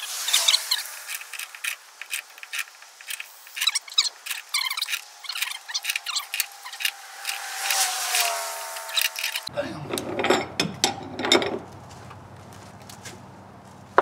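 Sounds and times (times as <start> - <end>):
auger squeaking into wood: 0.0 - 7.4.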